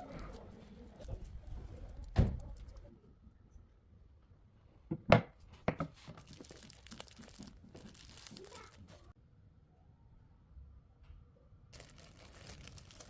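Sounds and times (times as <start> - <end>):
light crinkling rustle: 6.0 - 9.1, 11.8 - 13.0.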